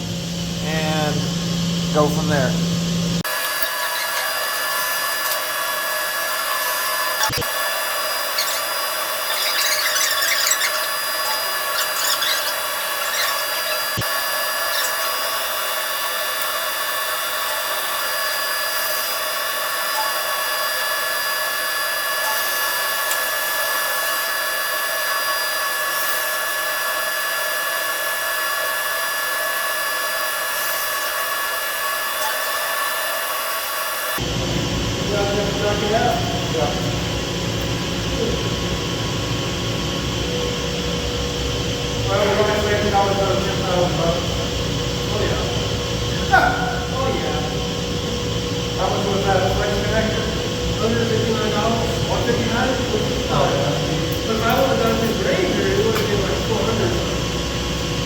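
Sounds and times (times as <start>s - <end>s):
machine hum: 0.0s - 58.0s
brief squeaks: 8.3s - 14.0s.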